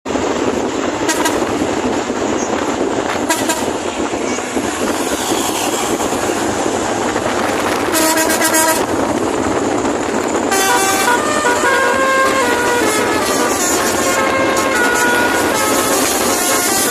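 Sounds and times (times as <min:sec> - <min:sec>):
loud vehicle noise: 0:00.0 - 0:16.9
musical air horn tune: 0:01.1 - 0:01.5, 0:03.2 - 0:03.8, 0:07.9 - 0:08.9, 0:10.5 - 0:16.9.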